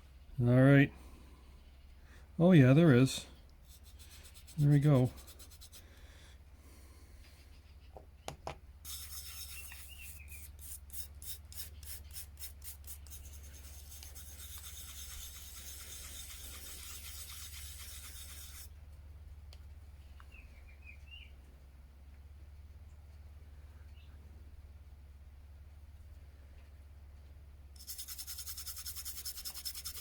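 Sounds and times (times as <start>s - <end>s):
scrubbing pocket watch: 8.9s - 18.7s, 27.8s - 30.0s.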